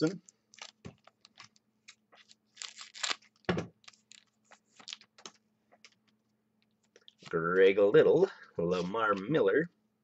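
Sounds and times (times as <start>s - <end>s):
cards being handled: 0.2s - 6.2s
foil pack crinkling: 0.5s - 5.4s.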